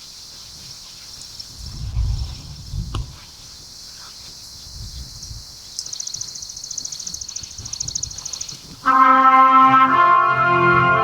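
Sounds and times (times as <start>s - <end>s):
pulsing insect trill: 0.0s - 8.9s
high insect buzz: 0.0s - 9.6s
low rumbles on microphone: 1.5s - 3.6s.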